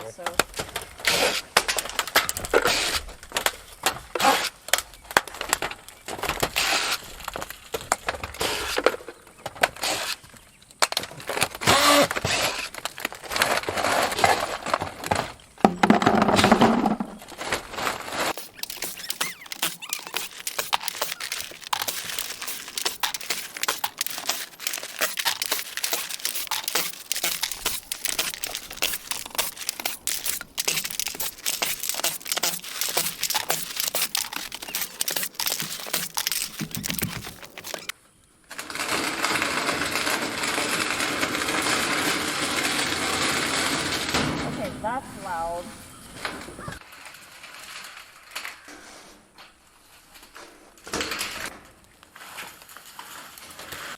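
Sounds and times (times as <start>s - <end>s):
roof shingles being torn off: 10.9s - 15.3s, 17.3s - 37.9s.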